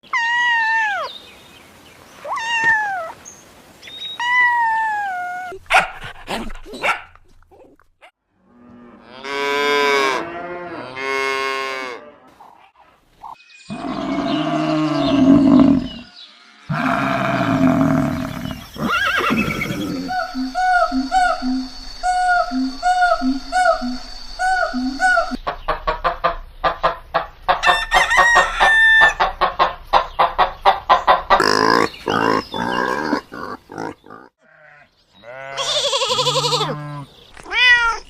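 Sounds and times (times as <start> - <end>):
farm animal calls: 9.1 - 38.0
cattle mooing: 13.7 - 16.1, 16.7 - 18.7.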